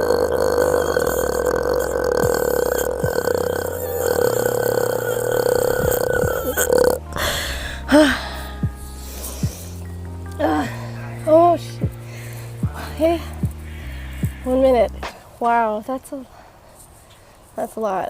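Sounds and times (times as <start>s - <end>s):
woman burping: 0.0s - 8.3s.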